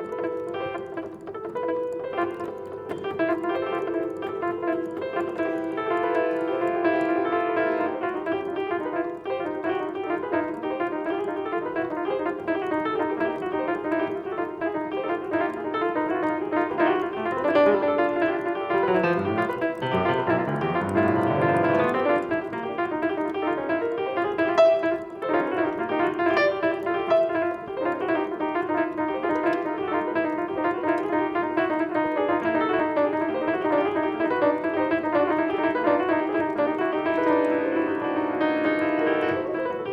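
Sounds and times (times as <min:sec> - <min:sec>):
solo piano playing: 0:00.0 - 0:39.9.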